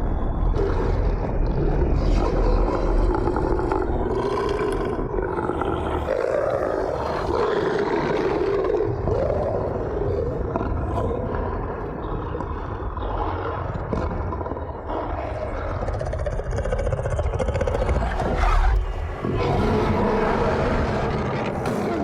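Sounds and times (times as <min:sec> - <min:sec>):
deep rumble: 0:00.0 - 0:06.1, 0:15.5 - 0:22.0
werewolf growling and roaring: 0:00.5 - 0:12.0, 0:13.9 - 0:22.0.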